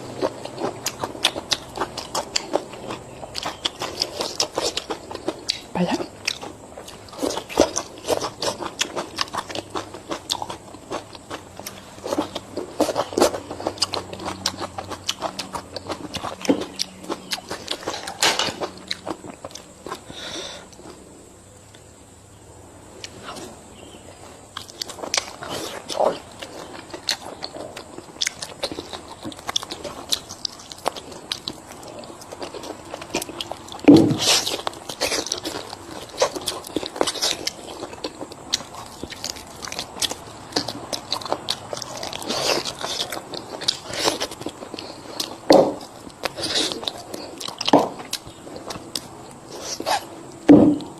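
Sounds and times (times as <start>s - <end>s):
person chewing and crunching food: 0.0s - 22.0s, 23.0s - 50.9s
thump: 33.9s - 34.3s, 50.5s - 50.8s.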